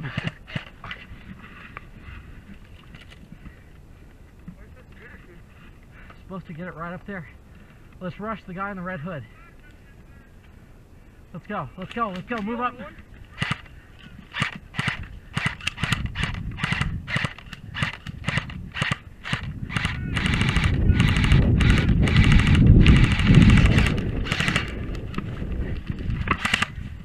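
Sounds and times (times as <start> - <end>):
low rumbling noise: 12.8 - 27.0
airsoft guns firing: 13.3 - 13.7, 14.3 - 25.2.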